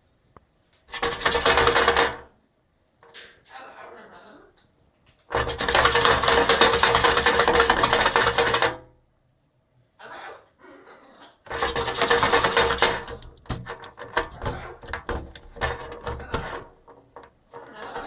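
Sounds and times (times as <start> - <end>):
parrot rattling a shell: 0.9 - 2.2, 5.3 - 8.8, 11.5 - 18.0.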